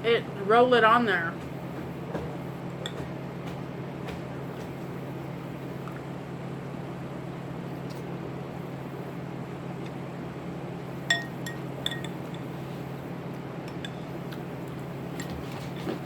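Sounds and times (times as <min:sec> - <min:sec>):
low background hum: 0:00.0 - 0:16.0
tableware clinking: 0:11.1 - 0:12.2.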